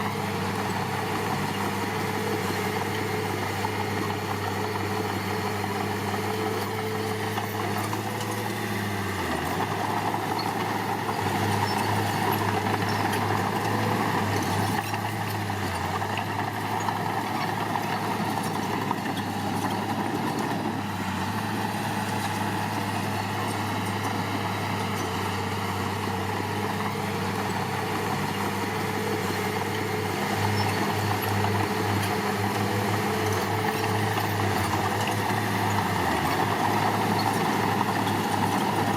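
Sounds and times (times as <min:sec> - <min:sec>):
heavy diesel engine running: 0:00.0 - 0:38.9.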